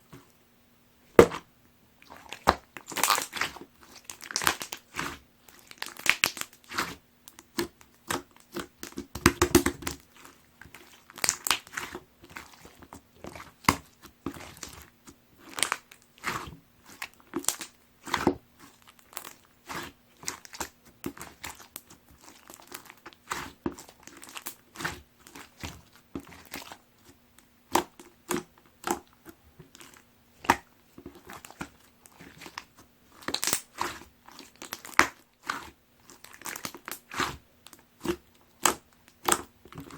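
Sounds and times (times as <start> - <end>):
slime squished with crunchy crackles: 1.2 - 39.9.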